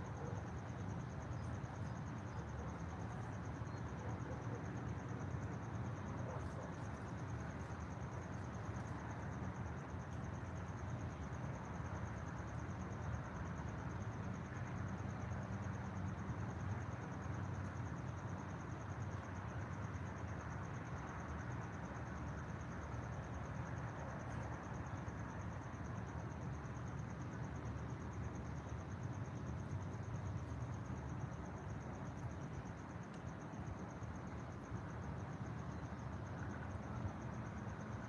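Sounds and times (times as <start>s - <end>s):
insects trilling: 0.0s - 38.0s.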